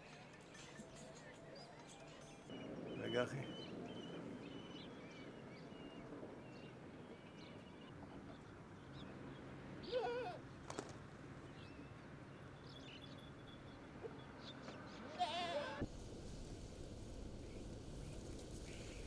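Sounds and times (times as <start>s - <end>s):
outdoor background noise: 0.0s - 19.0s
livestock bleating: 9.8s - 10.4s, 15.1s - 15.8s.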